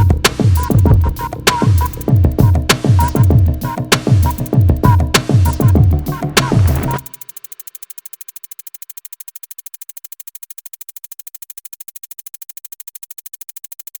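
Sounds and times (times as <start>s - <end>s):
rapid electronic pulsing: 0.0s - 8.7s.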